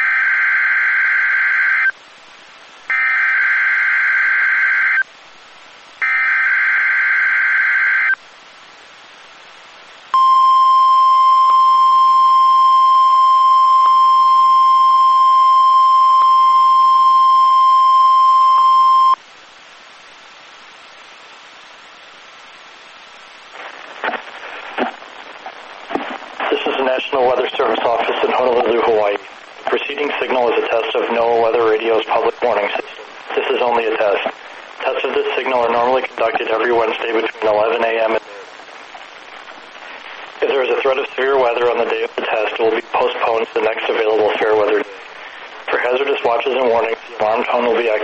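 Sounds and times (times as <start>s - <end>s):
radio hiss: 1.4s - 48.0s
steady warning alarm tone: 10.2s - 19.2s.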